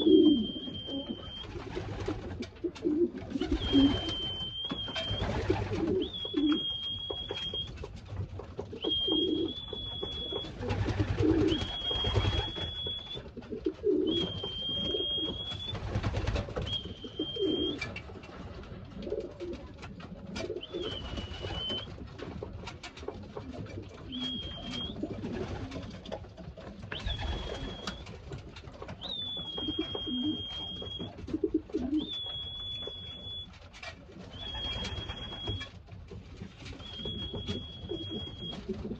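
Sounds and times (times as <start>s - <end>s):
pigeons cooing: 0.0s - 7.7s, 8.6s - 15.7s, 16.6s - 17.9s, 18.9s - 21.8s, 23.1s - 28.1s, 28.8s - 33.4s, 36.8s - 38.9s.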